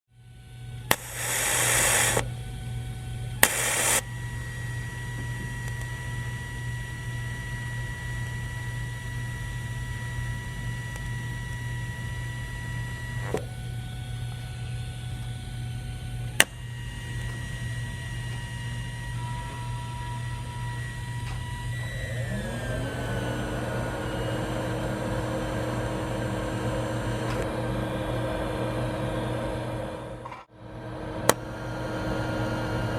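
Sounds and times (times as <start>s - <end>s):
electrical hum of equipment: 0.1s - 32.9s
sharp clicks: 0.9s - 2.2s, 3.4s - 4.0s.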